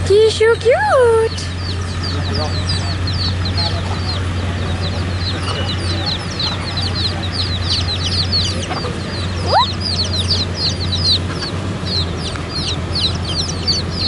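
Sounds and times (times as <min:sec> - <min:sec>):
chicks peeping: 0:00.5 - 0:14.0
rising whistle-like call: 0:09.4 - 0:09.8.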